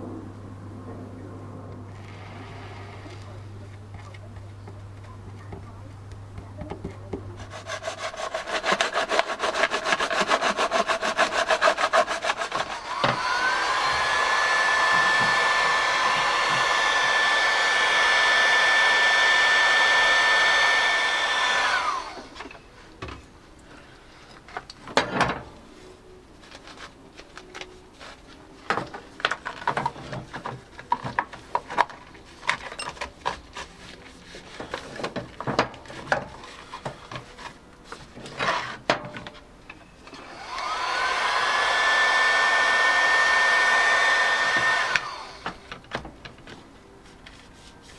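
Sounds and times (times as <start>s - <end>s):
rapid rhythmic strokes: 7.4s - 12.9s
small electric motor whining: 7.8s - 22.5s, 40.1s - 45.6s.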